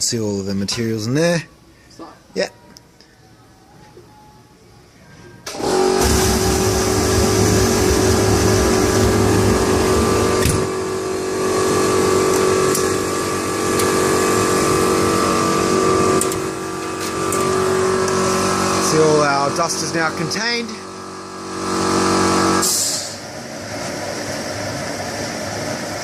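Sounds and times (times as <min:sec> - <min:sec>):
mixer machine hum with whine: 0:05.5 - 0:26.0
deep rumble: 0:06.1 - 0:10.8.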